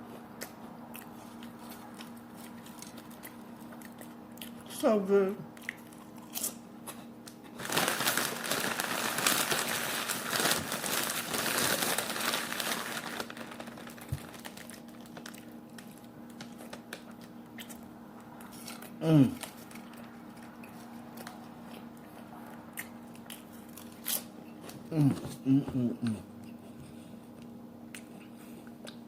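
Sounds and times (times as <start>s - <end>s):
food packaging crinkling: 7.4s - 17.8s.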